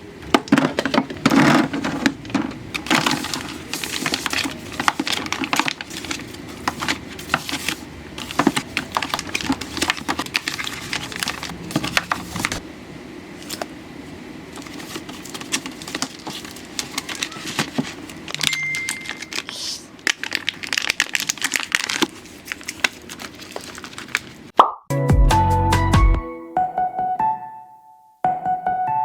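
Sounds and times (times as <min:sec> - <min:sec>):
small objects clicking and crinkling: 0:15.0 - 0:24.4.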